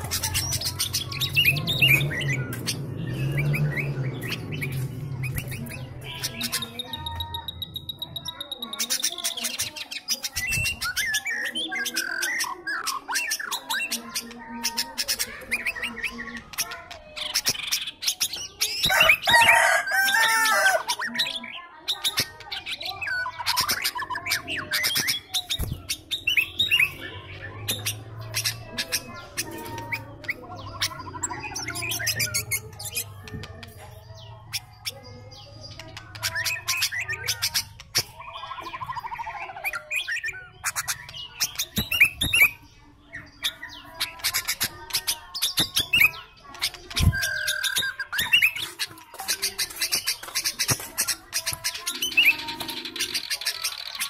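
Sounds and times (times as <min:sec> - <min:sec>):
bird chirping and warbling: 0:00.0 - 0:54.0.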